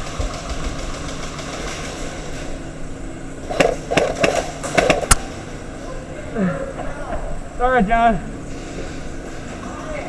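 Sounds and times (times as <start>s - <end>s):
airsoft guns firing: 0.0s - 2.3s, 3.5s - 5.2s.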